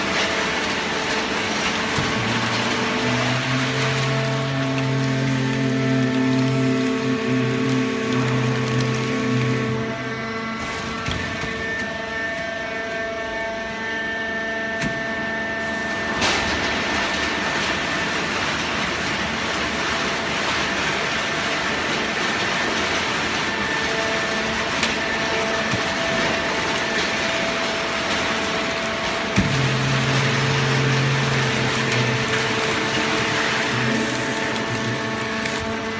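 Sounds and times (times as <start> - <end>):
baling press machine whine: 0.0 - 35.9.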